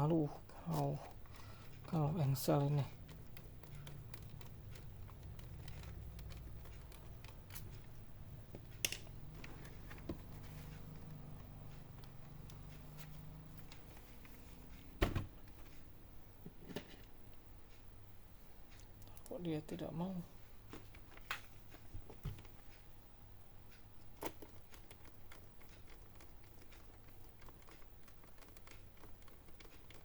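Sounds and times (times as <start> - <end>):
low steady hum: 0.0 - 30.0
laptop handling clicks and knocks: 8.5 - 11.1.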